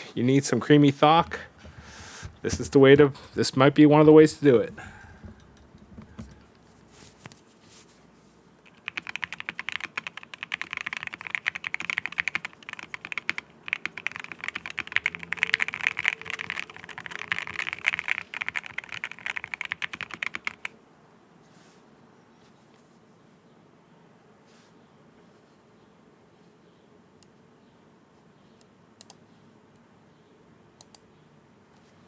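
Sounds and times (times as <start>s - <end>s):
typing on mechanical keyboard: 8.7s - 20.7s.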